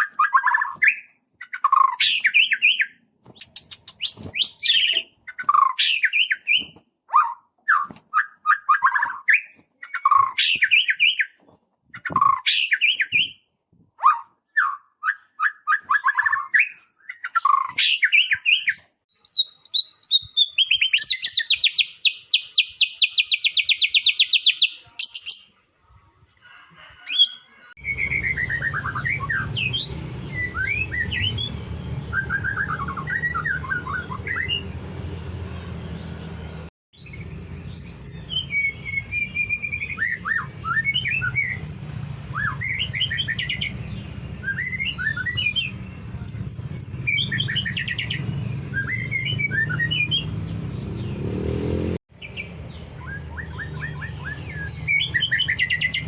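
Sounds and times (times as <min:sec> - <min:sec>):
bird singing whistled phrases: 0:14.0 - 0:25.6, 0:27.1 - 0:34.7, 0:37.0 - 0:50.3, 0:52.2 - 0:56.0.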